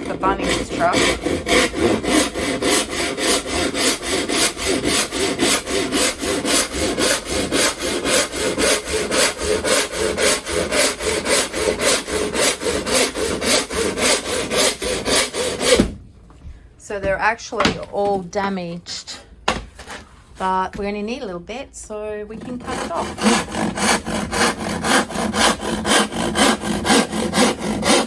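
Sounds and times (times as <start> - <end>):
handsaw cutting wood: 0.0 - 15.9, 22.4 - 28.0.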